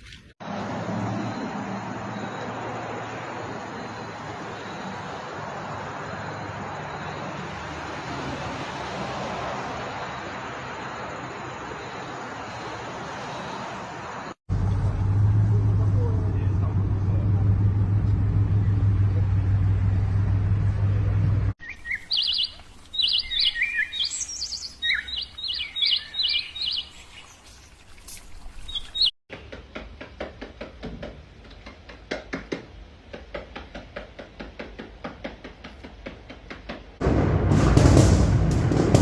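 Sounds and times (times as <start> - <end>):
bird chirping: 21.6 - 29.1.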